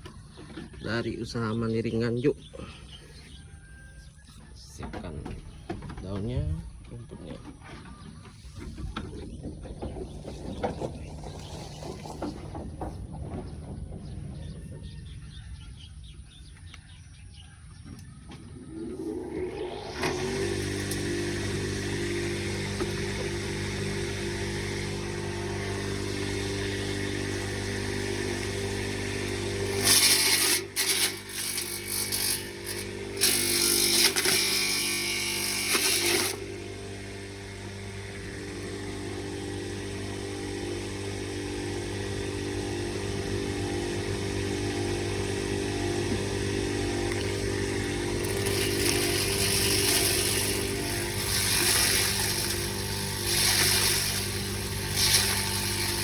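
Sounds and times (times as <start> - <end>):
grass chopper running: 7.2 - 56.0
leaves being shredded: 19.3 - 36.6, 44.9 - 56.0.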